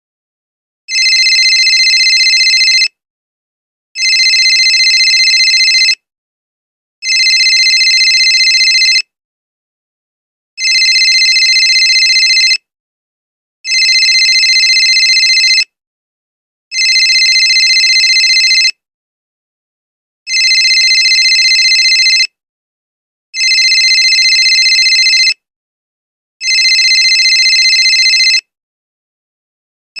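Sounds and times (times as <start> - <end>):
phone ringing: 0.9 - 2.9, 4.0 - 6.0, 7.0 - 9.1, 10.6 - 12.6, 13.7 - 15.7, 16.7 - 18.8, 20.3 - 22.3, 23.4 - 25.4, 26.4 - 28.5.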